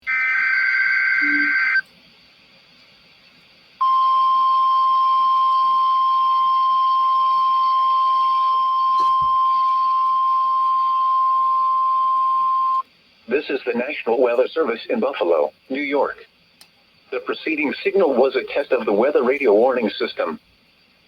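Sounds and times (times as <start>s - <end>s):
steady warning alarm tone: 0.1s - 1.8s, 3.8s - 12.8s
warbling data screech: 0.1s - 1.8s
radio hiss: 12.4s - 16.4s, 17.0s - 20.5s.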